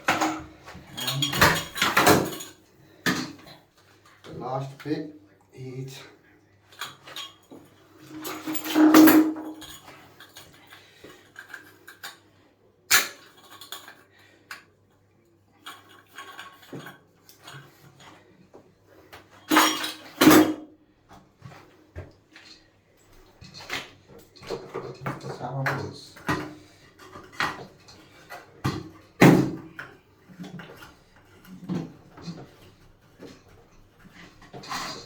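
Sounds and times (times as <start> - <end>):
tools clinking and knocking: 0.0 - 3.6, 6.7 - 12.2, 15.6 - 18.0, 19.4 - 20.6, 23.1 - 35.0.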